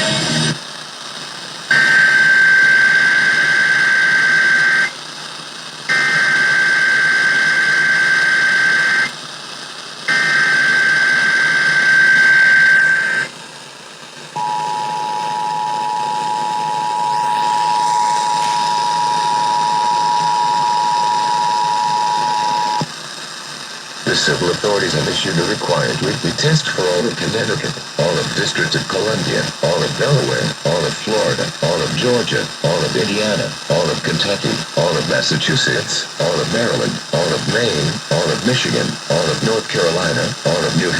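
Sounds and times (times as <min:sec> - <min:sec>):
warbling data squeal: 0:01.7 - 0:04.9, 0:10.1 - 0:13.3, 0:14.4 - 0:22.8
two-tone attention signal: 0:10.1 - 0:13.3, 0:14.4 - 0:22.8.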